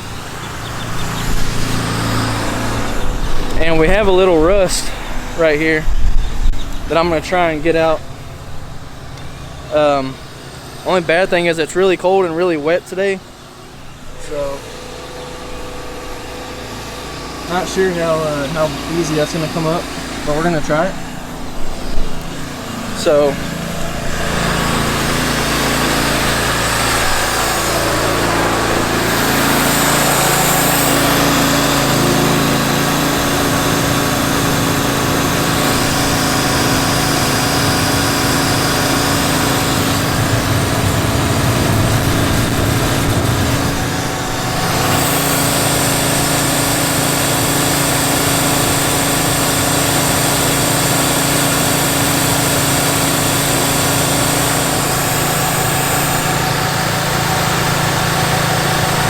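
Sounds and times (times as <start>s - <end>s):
pressure washer engine running: 0.0s - 59.0s
water jet spraying on concrete: 24.0s - 59.0s.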